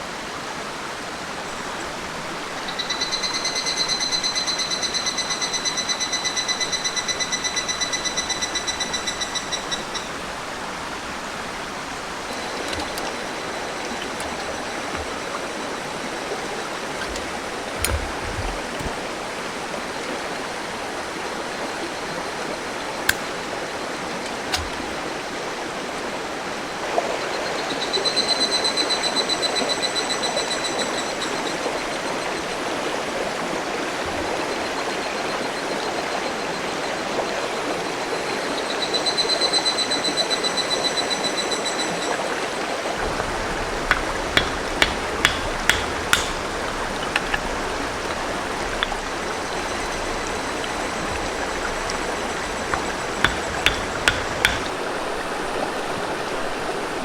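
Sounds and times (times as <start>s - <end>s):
river water rushing: 10.1s - 21.2s, 42.4s - 57.0s
sharp knocks: 12.2s - 15.6s, 16.8s - 19.1s, 24.5s - 25.0s, 43.0s - 54.8s.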